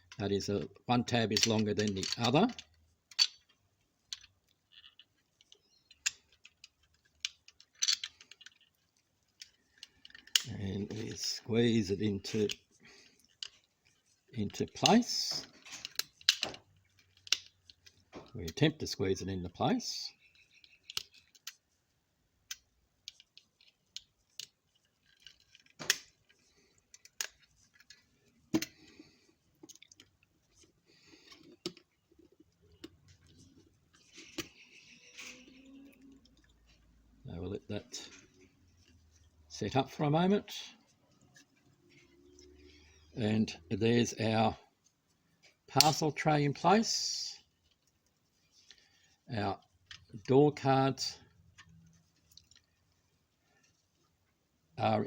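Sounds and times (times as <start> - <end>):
plastic model parts clicking: 1.3 - 11.4, 12.2 - 18.7, 20.2 - 21.6, 22.4 - 28.8, 45.8 - 46.0.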